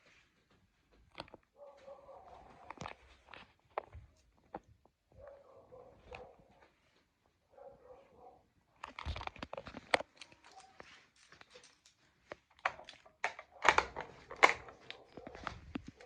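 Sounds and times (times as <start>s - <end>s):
clicks and knocks: 11.4s - 16.0s.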